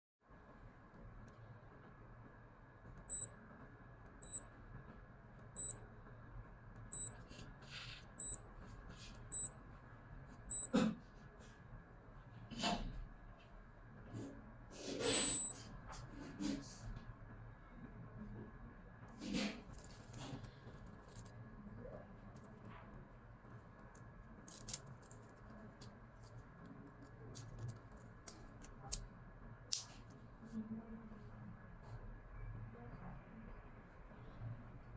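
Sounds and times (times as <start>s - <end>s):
digital wristwatch beeping: 3.1s - 3.3s, 4.2s - 4.5s, 5.6s - 5.8s, 6.9s - 7.2s, 8.2s - 8.4s, 9.3s - 9.6s, 10.5s - 10.7s, 15.0s - 15.6s.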